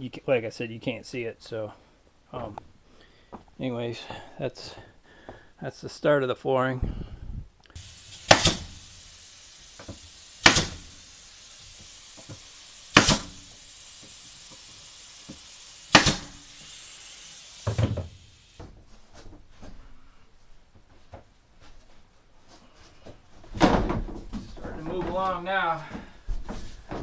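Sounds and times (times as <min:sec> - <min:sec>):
steady hiss: 0:07.0 - 0:19.2.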